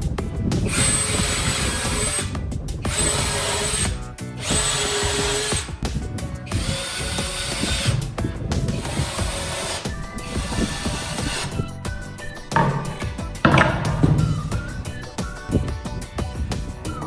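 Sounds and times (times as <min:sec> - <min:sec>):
power tool whining: 0:00.7 - 0:02.3, 0:02.9 - 0:05.8, 0:06.5 - 0:15.5.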